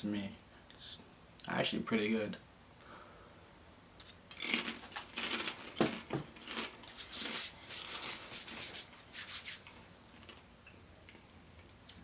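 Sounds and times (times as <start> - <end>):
snack bag rustling: 4.3 - 8.3
sharp scrapes: 6.9 - 9.8.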